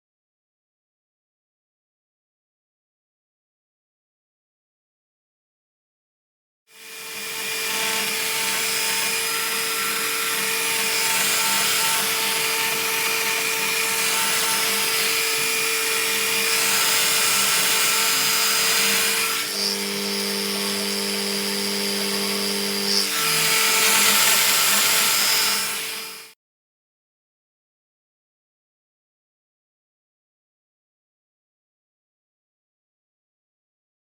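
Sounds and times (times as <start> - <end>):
machine motor whine: 6.9 - 26.3.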